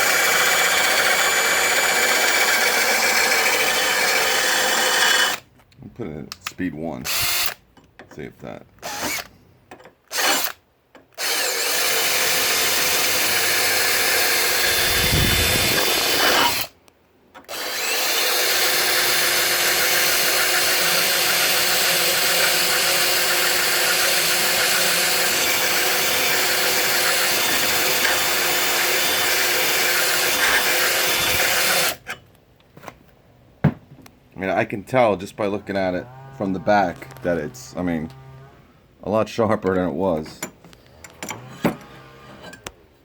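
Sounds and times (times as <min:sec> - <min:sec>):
drill grinding a blade: 0:00.0 - 0:05.4, 0:07.1 - 0:07.6, 0:08.8 - 0:09.3, 0:10.1 - 0:10.6, 0:11.2 - 0:16.7, 0:17.5 - 0:32.2.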